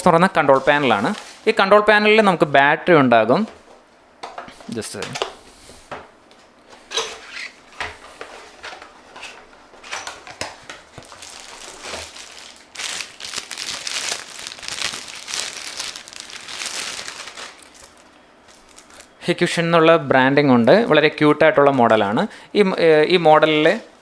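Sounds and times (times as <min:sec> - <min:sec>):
packaging crinkling and rustling: 0:08.3 - 0:19.2.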